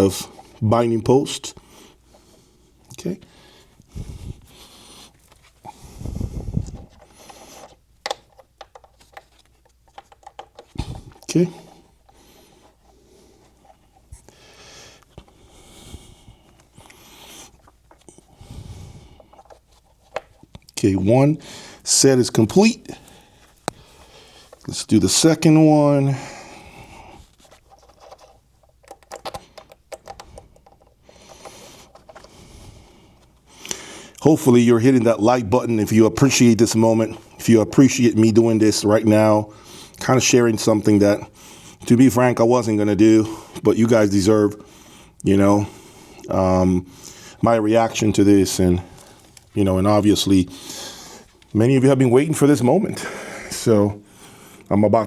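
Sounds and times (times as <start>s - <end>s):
heavy breathing: 1.5s - 7.8s, 10.6s - 20.2s, 21.4s - 21.9s, 22.8s - 24.7s, 26.0s - 34.2s, 41.2s - 41.9s, 44.6s - 48.0s, 48.6s - 49.6s, 50.4s - 51.5s, 52.9s - 54.7s
soft rustle: 3.4s - 21.2s
small clicks and taps: 8.0s - 10.8s, 27.7s - 32.3s.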